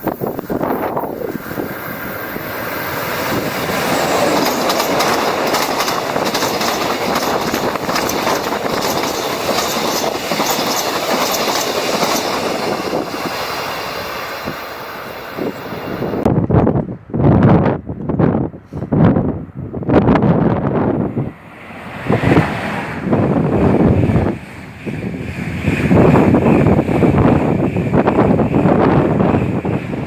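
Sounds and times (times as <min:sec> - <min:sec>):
train rumbling on rails: 0:00.0 - 0:30.0
wheels clattering over track: 0:03.2 - 0:13.4.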